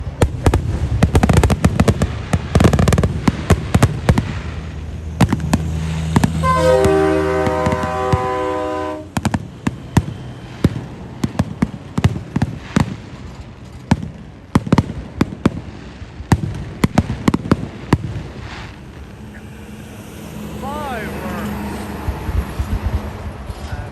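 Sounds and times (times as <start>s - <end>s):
fireworks bangs and crackles: 0.0s - 19.3s, 22.0s - 23.9s
horn-like blare: 5.6s - 9.2s, 18.8s - 23.1s.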